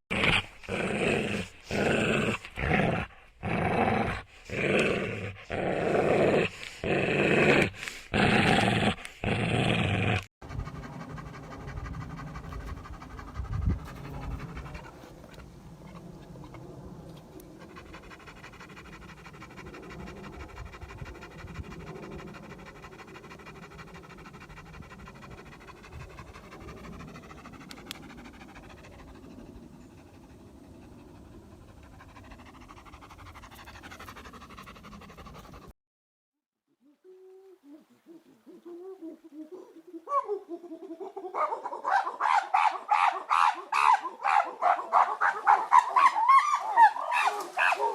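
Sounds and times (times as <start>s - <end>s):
animal panting: 10.4s - 35.7s.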